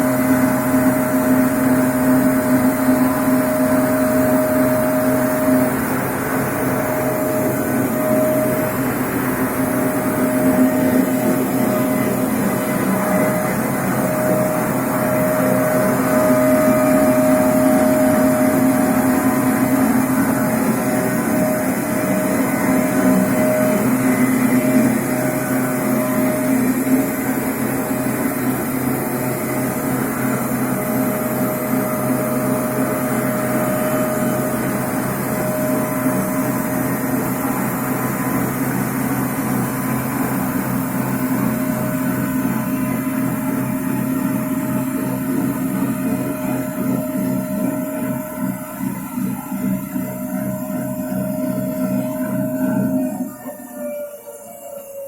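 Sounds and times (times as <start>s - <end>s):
sawmill humming and whining: 0.0s - 55.0s.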